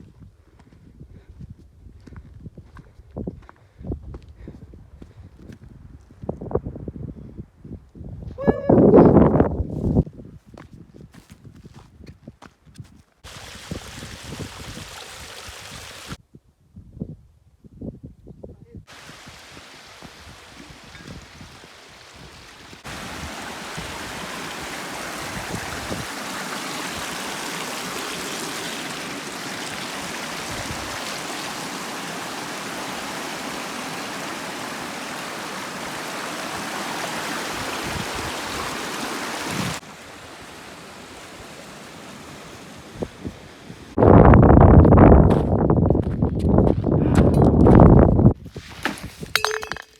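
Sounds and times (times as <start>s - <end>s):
stream rushing over rocks: 13.2s - 16.2s, 18.9s - 44.0s.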